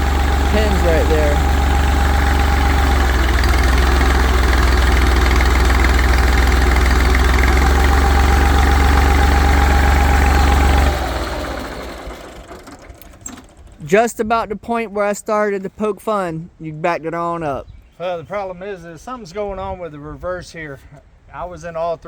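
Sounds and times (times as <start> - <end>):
tractor engine running: 0.0 - 14.4.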